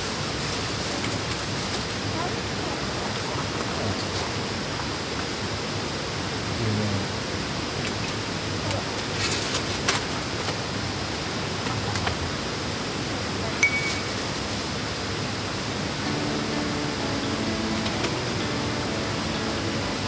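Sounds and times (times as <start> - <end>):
campfire crackling: 15.8 - 20.0.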